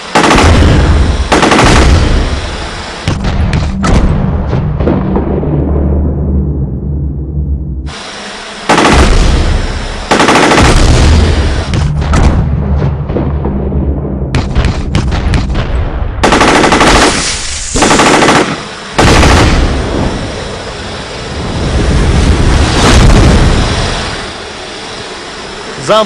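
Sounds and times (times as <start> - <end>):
machine-gun bursts: 0.0 - 2.3, 8.7 - 9.2, 10.1 - 11.0, 16.2 - 19.6.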